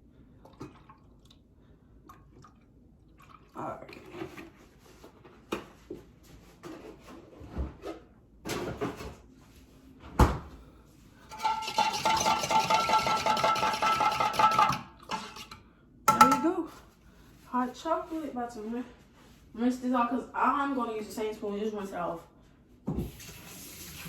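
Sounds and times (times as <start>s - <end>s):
spoon stirring in a mug: 11.3s - 15.5s.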